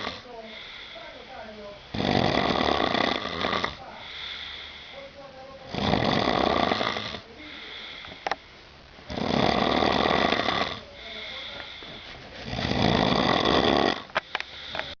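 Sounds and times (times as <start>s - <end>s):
person snoring loudly: 0.0s - 0.2s, 1.9s - 3.8s, 5.7s - 7.2s, 9.1s - 10.8s, 12.4s - 15.0s
quiet breathing: 0.0s - 15.0s.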